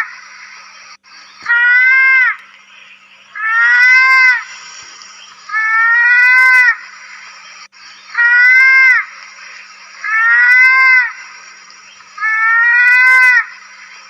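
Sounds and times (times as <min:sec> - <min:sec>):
steady hiss: 0:00.0 - 0:14.0
mouse-deer high drawn-out cries: 0:05.5 - 0:06.8, 0:10.0 - 0:11.2, 0:12.2 - 0:13.6.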